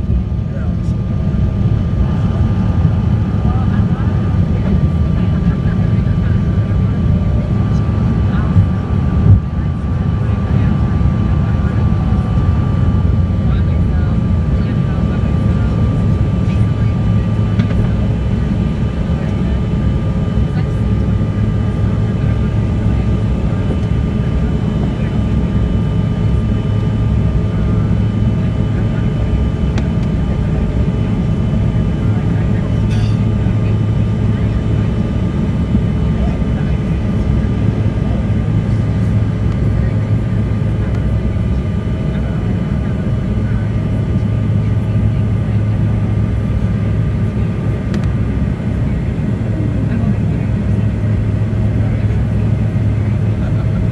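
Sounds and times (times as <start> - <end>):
jet engines rumbling: 0.0 - 53.9.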